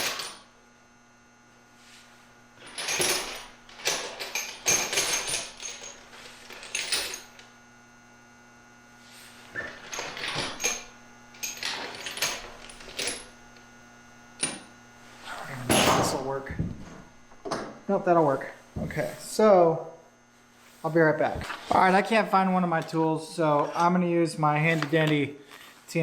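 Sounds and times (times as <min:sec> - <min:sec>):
faint steady hum: 0:00.0 - 0:26.0
metal tools clinking: 0:02.6 - 0:07.4, 0:09.6 - 0:13.4, 0:14.4 - 0:14.7, 0:15.6 - 0:16.2.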